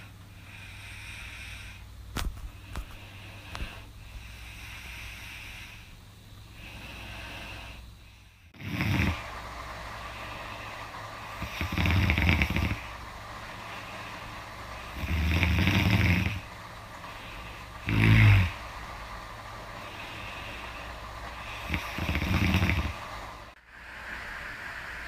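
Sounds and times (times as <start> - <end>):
woman snoring: 3.0 - 9.4, 10.0 - 18.7, 19.8 - 23.1.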